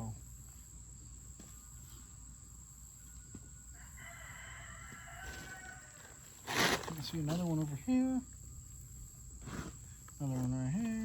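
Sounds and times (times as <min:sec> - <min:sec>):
rooster crowing: 0:03.1 - 0:06.4.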